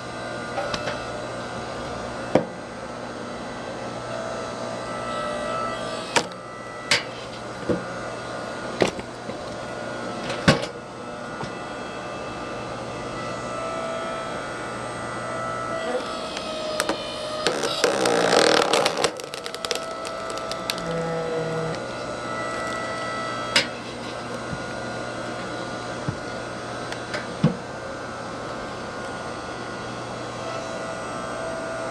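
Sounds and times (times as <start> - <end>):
hydraulic log splitter running: 13.2 - 27.6
log splitting crackle: 16.8 - 21.8
wood cracking: 17.4 - 21.4.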